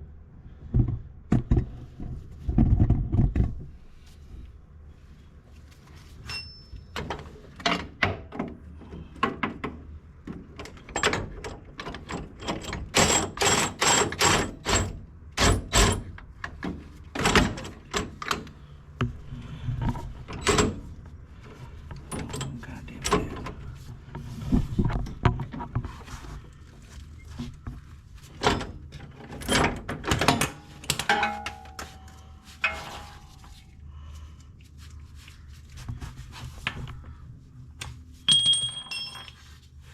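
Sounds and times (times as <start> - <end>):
metal tool knocks and clanks: 30.3 - 31.9, 38.3 - 39.4.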